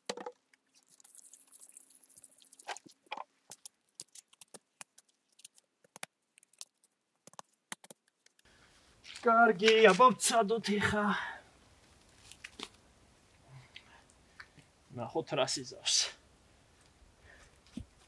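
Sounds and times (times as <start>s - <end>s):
faint clicks and crunches of gear: 11.8s - 12.8s.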